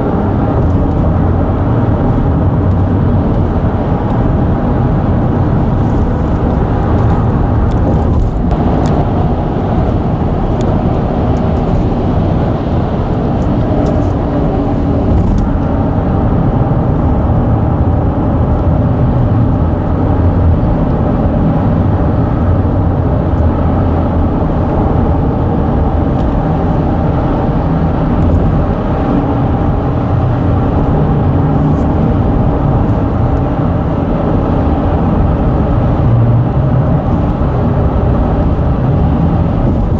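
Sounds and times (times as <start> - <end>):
tyres rumbling over bridge deck: 3.6 - 16.8
bridge droning: 8.5 - 15.3.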